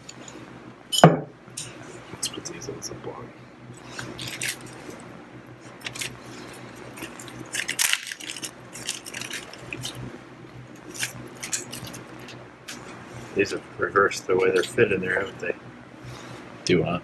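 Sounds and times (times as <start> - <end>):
steady low hum: 0.0 - 17.0
small metal parts clinking: 7.0 - 9.9.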